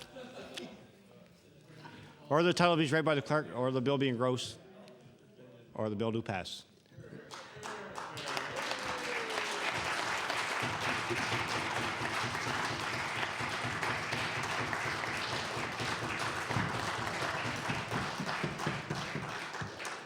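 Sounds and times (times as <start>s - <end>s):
sustained applause: 7.3s - 20.0s.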